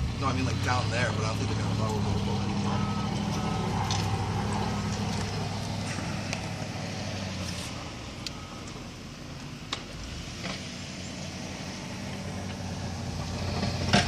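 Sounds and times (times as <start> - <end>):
truck engine running: 0.0 - 14.0
reversing beeper: 2.6 - 4.1.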